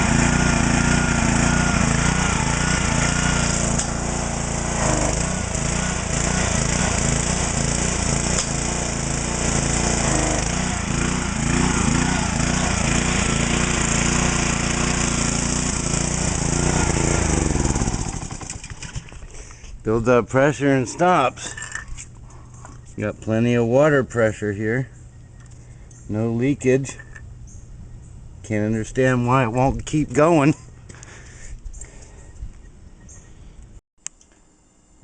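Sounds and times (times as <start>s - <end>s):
pressure washer engine running: 0.0s - 21.8s.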